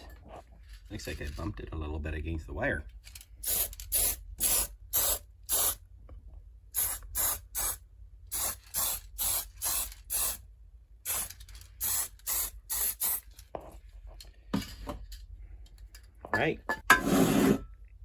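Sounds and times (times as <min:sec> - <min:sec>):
spray paint hissing in bursts: 0:03.4 - 0:05.8, 0:06.7 - 0:10.4, 0:11.0 - 0:13.3.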